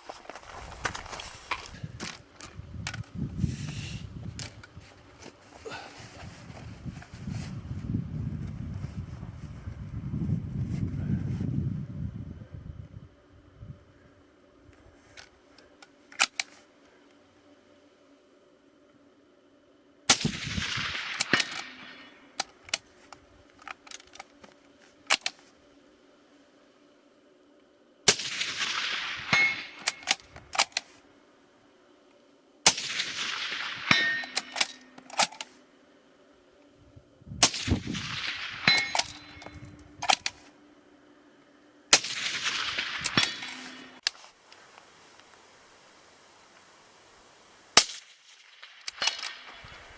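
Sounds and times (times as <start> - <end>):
suppressed rifle shots: 20.1 - 22.3, 28.1 - 30.2, 32.7 - 34.8, 37.4 - 39.6, 41.9 - 45.8, 47.7 - 49.9
rifle bolt clicking and clanging: 21.1 - 22.8, 29.4 - 30.9, 33.9 - 35.5, 38.6 - 40.4, 47.8 - 49.9.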